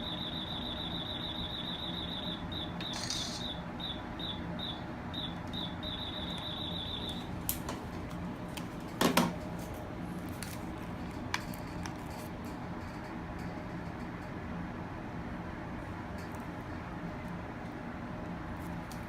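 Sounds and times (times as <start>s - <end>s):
short high alert beeps: 0.0s - 7.2s
steady low hum: 0.0s - 19.0s.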